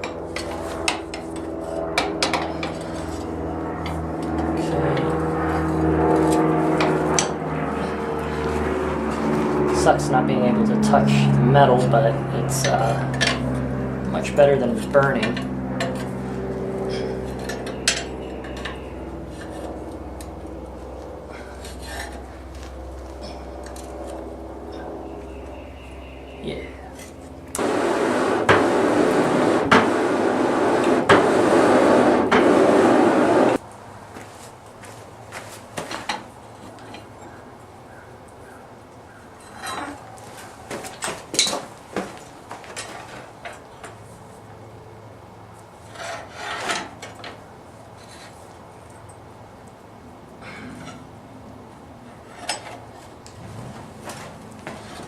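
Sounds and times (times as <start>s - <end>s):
steady low hum: 0.0s - 55.0s
steel tools clinking and scraping: 16.9s - 20.4s, 39.4s - 40.2s, 52.1s - 52.9s.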